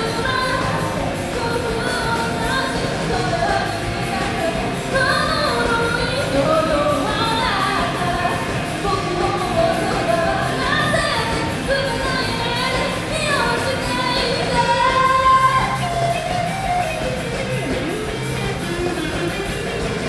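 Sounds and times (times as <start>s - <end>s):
pop-rock song with vocals: 0.0s - 20.0s.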